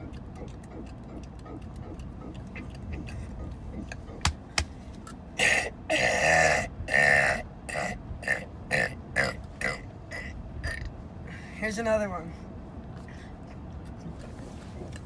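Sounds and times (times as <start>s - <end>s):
man burping: 5.4s - 10.9s.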